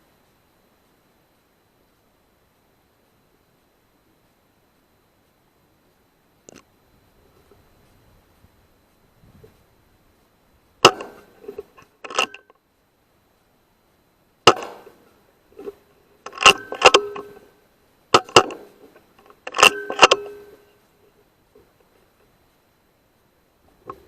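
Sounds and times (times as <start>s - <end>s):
metallic clanks and clicks: 10.8s - 12.5s, 15.6s - 17.5s, 18.2s - 20.6s.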